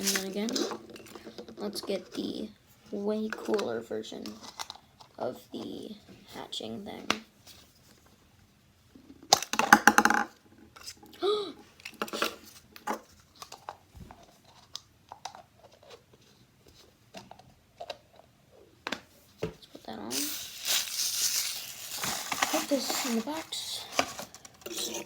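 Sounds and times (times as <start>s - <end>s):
plastic toy clattering and rattling: 0.0s - 2.4s, 20.1s - 25.0s
packaging rustling: 20.1s - 25.0s.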